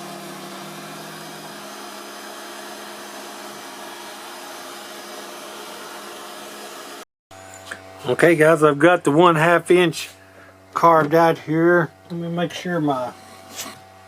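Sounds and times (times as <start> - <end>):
router spindle running: 0.0 - 6.9, 12.1 - 14.0.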